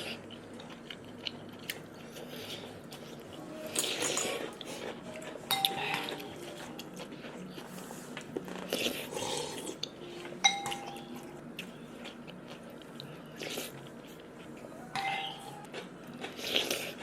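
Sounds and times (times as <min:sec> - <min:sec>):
crunchy biting and chewing: 0:15.5 - 0:17.0.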